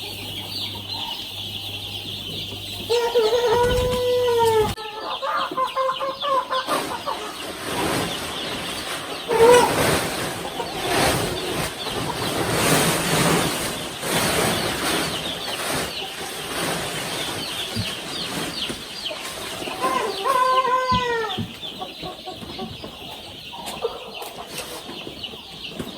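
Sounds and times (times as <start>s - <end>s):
chicks peeping: 0.0s - 25.9s
chicken squawk: 2.8s - 7.9s, 9.2s - 12.3s, 19.7s - 21.5s
rustling: 6.7s - 20.0s.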